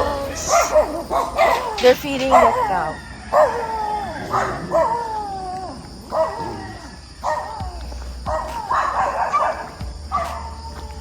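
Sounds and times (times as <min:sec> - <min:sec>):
dog barking call: 0:00.5 - 0:05.1, 0:06.1 - 0:07.6, 0:08.3 - 0:10.5.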